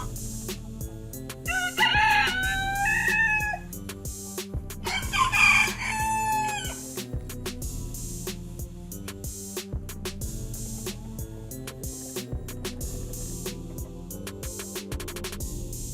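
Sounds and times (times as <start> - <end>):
background music with beat: 0.0 - 15.9
rooster crowing: 1.5 - 3.7, 4.8 - 7.0.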